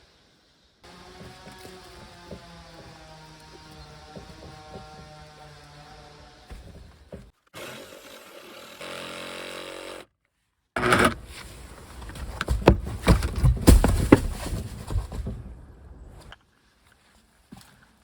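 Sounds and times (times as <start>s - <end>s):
sharp knocks and clatter: 1.1s - 5.6s, 12.1s - 15.6s.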